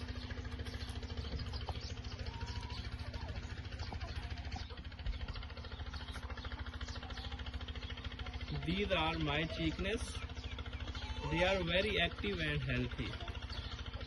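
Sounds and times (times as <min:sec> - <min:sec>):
small engine idling: 0:00.0 - 0:14.0
faint bird chirps: 0:09.5 - 0:11.8.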